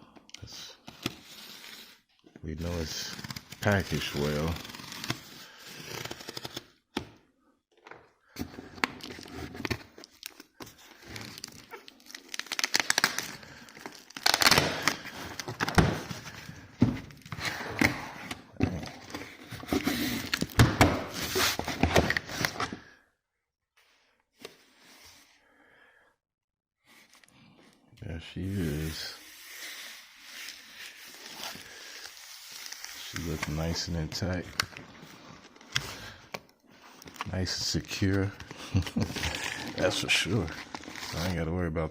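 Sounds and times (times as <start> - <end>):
packaging rustling and crinkling: 8.4 - 22.9, 30.2 - 41.4.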